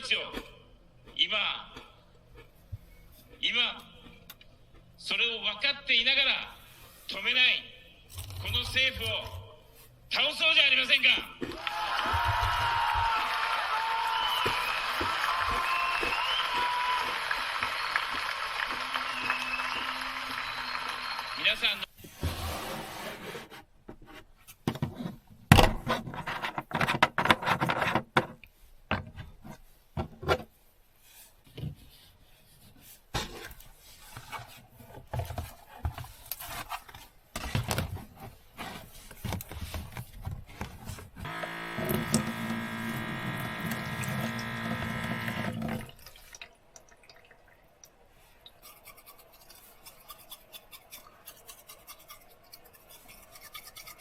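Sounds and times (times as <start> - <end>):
steady buzzing hum: 41.2 - 45.9.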